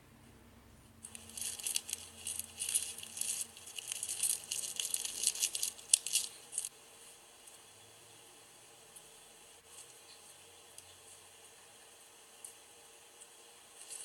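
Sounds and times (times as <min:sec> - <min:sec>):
plastic charms rattling and clicking: 0:01.0 - 0:06.7.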